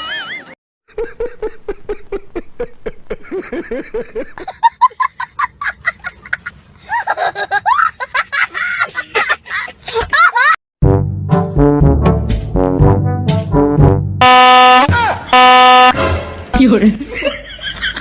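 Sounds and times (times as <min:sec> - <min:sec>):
people laughing: 0:00.0 - 0:10.6, 0:17.0 - 0:18.0.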